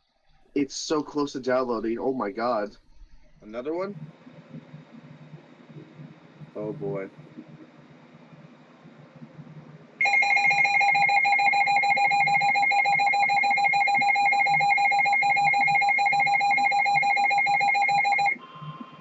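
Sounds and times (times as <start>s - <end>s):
fluttering alarm tone: 10.0s - 18.7s.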